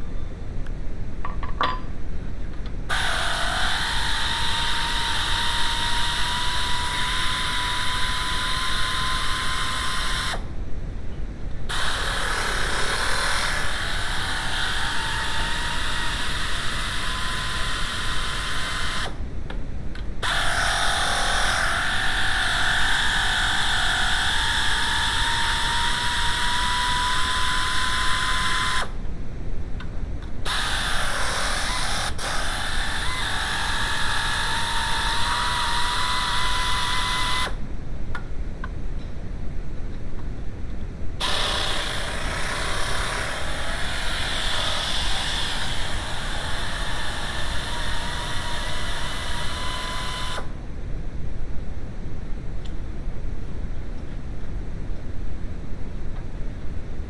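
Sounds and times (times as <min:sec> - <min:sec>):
power tool motor whining: 0:02.9 - 0:10.4, 0:11.7 - 0:19.2, 0:20.2 - 0:29.0, 0:30.5 - 0:37.6, 0:41.2 - 0:50.5.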